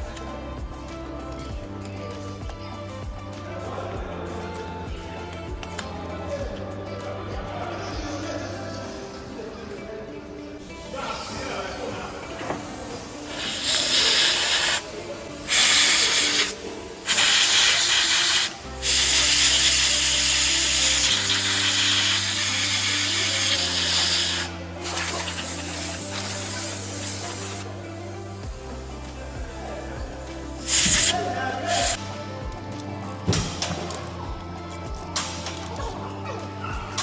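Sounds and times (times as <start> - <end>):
background music with bass: 0.0 - 37.0
pressurised spray hissing: 10.7 - 35.8.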